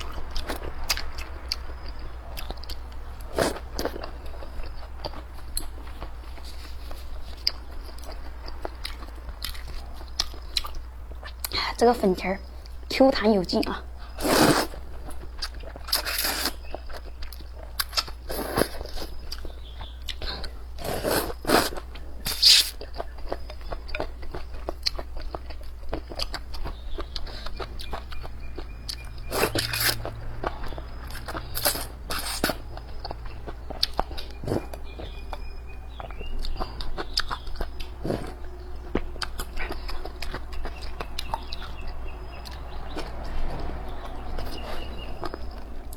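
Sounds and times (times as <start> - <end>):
person chewing food: 0.0 - 11.6, 14.0 - 45.9.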